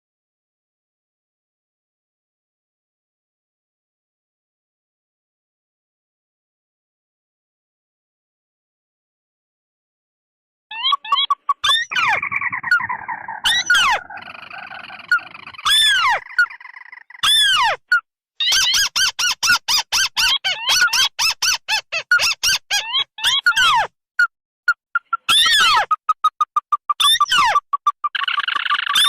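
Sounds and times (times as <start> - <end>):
fast run of short bird notes: 10.7 - 17.7
loud harsh bird calls: 10.7 - 23.9, 27.0 - 29.0.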